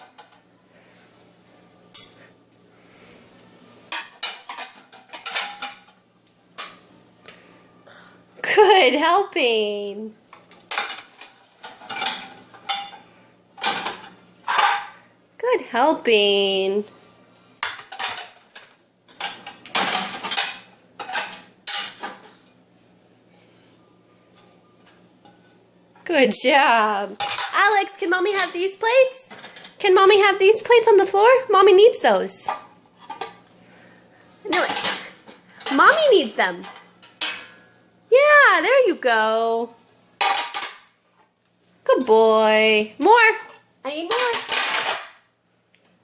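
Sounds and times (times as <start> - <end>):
dishes clattering: 3.9 - 6.0, 10.4 - 13.0, 13.6 - 15.0, 17.6 - 22.4, 27.2 - 27.6, 32.4 - 33.4, 34.5 - 35.8, 40.2 - 40.9, 43.5 - 45.2.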